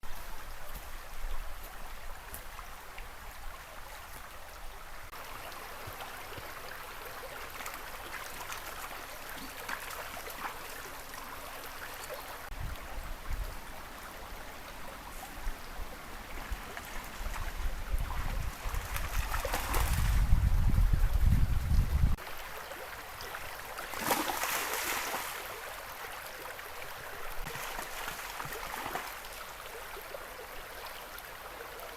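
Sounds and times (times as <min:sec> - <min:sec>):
water rushing and splashing: 0:00.0 - 0:31.9.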